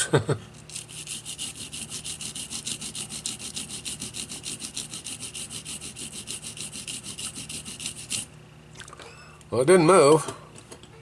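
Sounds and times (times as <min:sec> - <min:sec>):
rapid scrubbing of circuit board: 0:00.7 - 0:08.3.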